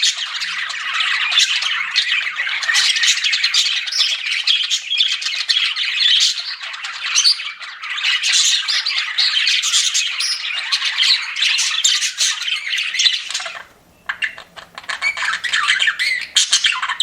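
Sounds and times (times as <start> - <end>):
budgerigars chattering and chirping: 0.0 - 17.0.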